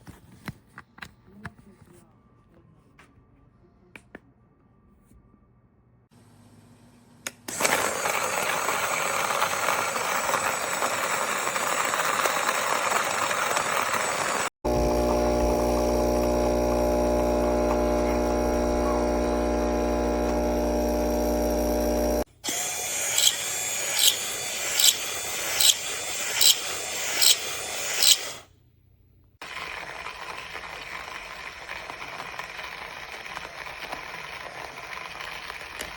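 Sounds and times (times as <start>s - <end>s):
coffee grinder motor running: 7.5s - 28.4s, 29.4s - 35.9s.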